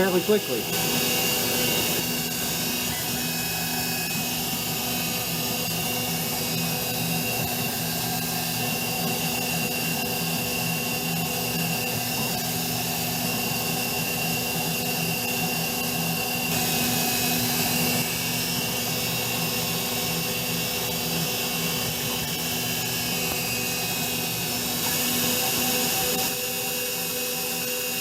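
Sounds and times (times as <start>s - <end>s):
milling machine spindle hum: 0.0s - 28.0s.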